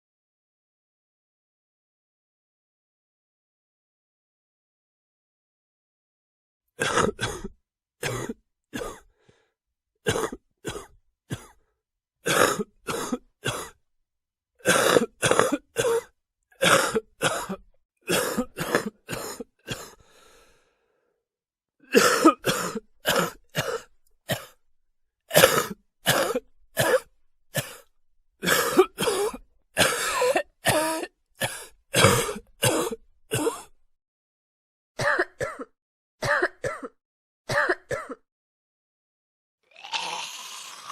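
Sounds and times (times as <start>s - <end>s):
person coughing: 6.8s - 9.1s, 10.1s - 11.6s, 12.3s - 13.8s, 14.6s - 20.0s, 21.9s - 24.6s, 25.3s - 33.7s, 35.0s - 38.2s
throat clearing: 6.8s - 9.1s, 10.1s - 11.6s, 25.3s - 33.7s.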